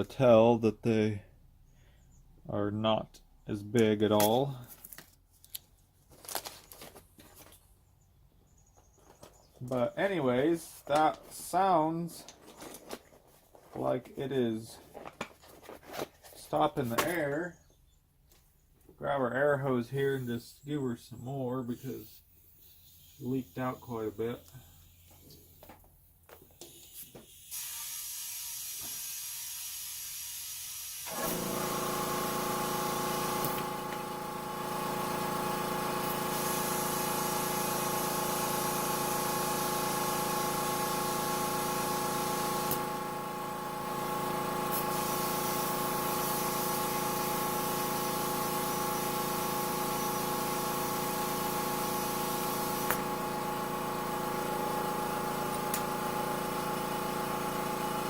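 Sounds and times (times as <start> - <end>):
compressed air hissing: 21.6 - 25.7, 44.0 - 58.0
air compressor motor running: 21.7 - 58.0.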